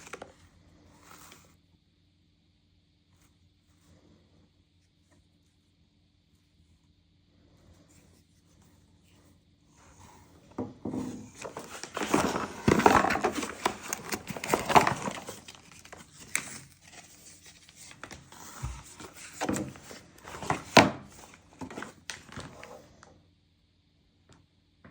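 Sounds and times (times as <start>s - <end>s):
packaging crinkling and rustling: 0.0s - 0.4s, 10.6s - 23.0s.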